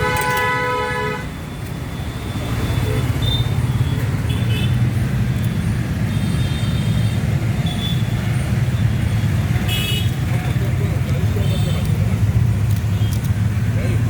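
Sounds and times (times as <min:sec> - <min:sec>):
vehicle horn toot: 0:00.0 - 0:01.3, 0:09.6 - 0:10.2
road traffic rumble: 0:00.0 - 0:14.0.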